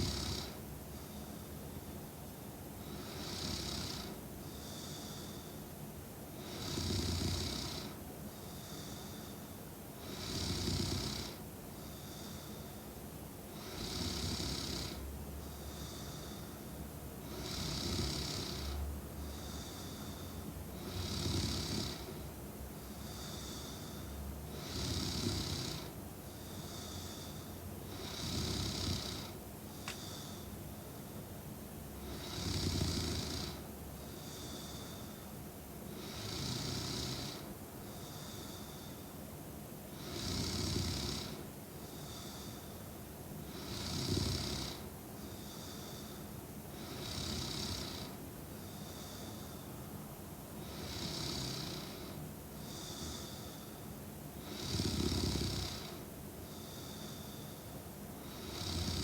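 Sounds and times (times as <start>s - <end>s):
woman snoring: 0.0s - 0.6s, 2.8s - 4.2s, 6.4s - 8.0s, 10.0s - 11.4s, 13.6s - 15.0s, 17.2s - 22.3s, 22.9s - 26.0s, 26.6s - 30.4s, 32.0s - 35.1s, 35.9s - 38.9s, 40.0s - 41.4s, 43.5s - 46.2s, 46.8s - 49.4s, 50.6s - 53.7s, 54.4s - 56.0s, 58.2s - 59.0s.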